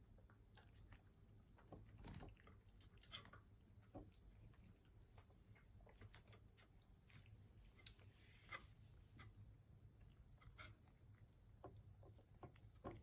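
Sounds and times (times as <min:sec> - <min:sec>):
cats chewing food: 0:00.0 - 0:13.0
small clicks from food dishes: 0:10.0 - 0:13.0.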